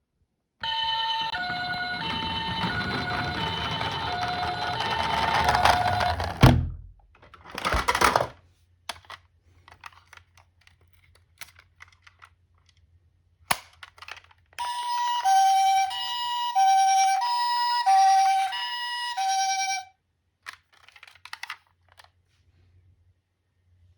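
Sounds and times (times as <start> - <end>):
ambulance siren: 0.6 - 6.5, 14.6 - 19.9
two-tone ambulance siren: 0.6 - 6.5, 14.6 - 19.9.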